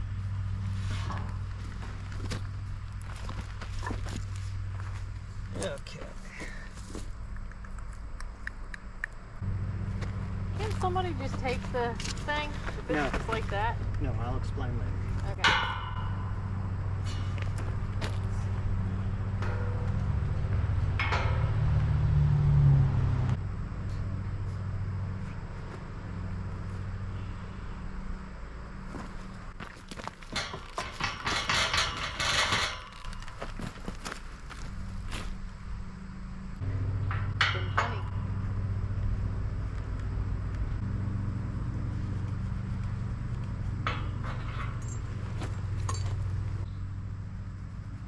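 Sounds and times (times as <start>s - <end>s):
engine idling and revving: 9.3s - 15.6s, 16.2s - 29.6s, 34.4s - 48.0s.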